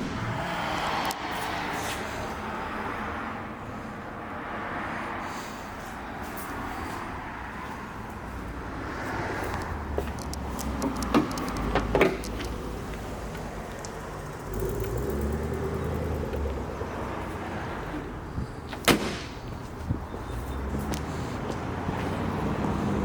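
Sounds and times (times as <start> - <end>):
sharp knocks and clicks: 9.6 - 12.7.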